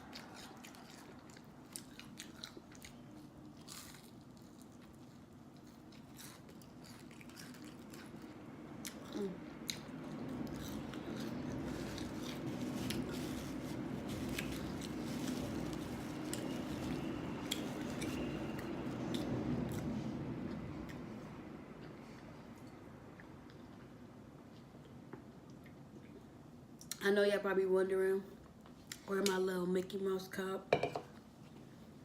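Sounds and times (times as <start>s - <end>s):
chewing and biting food: 0.0s - 19.9s
steady low hum: 0.0s - 32.0s.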